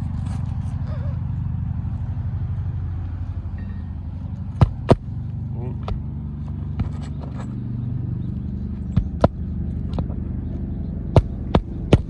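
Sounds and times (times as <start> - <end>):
steady engine drone: 0.0 - 12.0
hammer striking nails: 4.6 - 5.1, 11.2 - 12.0.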